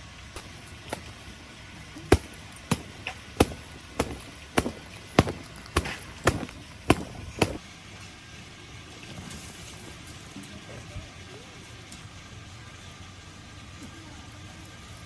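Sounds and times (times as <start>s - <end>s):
sharp knocks from striking: 0.4s - 1.2s, 2.1s - 7.6s.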